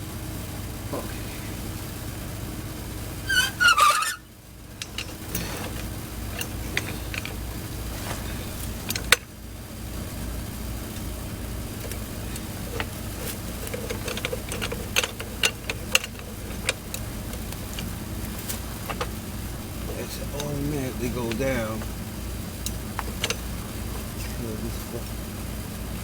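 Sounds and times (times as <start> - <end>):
steady low hum: 0.0 - 26.0
hand tools clicking and tapping: 3.3 - 9.3, 11.7 - 19.2, 19.8 - 22.0, 22.6 - 24.3.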